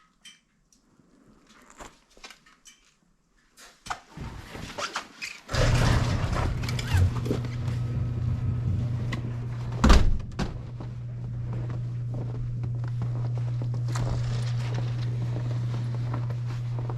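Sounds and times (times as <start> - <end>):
engine starting and idling: 5.5 - 9.8
engine knocks: 5.5 - 11.0
loud thump: 9.8 - 10.6.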